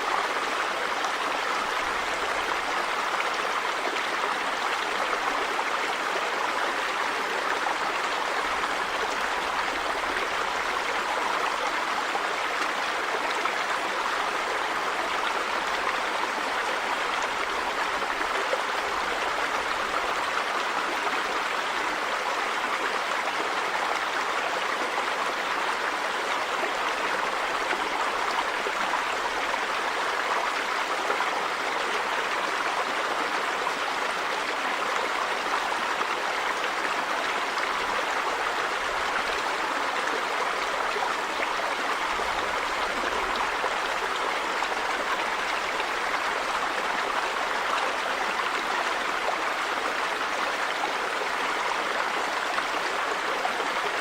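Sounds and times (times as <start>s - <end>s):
river water running over rocks: 0.0s - 54.0s.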